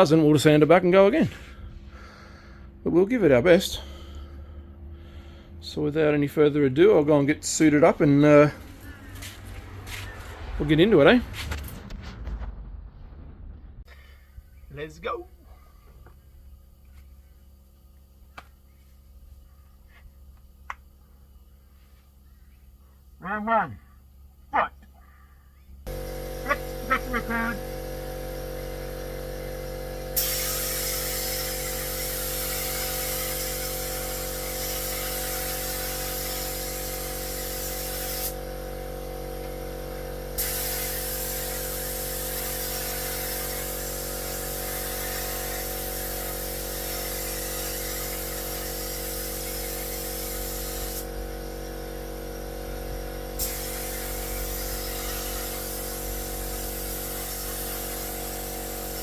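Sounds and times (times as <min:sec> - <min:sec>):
air compressor humming: 0:00.0 - 0:10.4, 0:13.9 - 0:59.0
air spray gun hissing: 0:25.9 - 0:59.0.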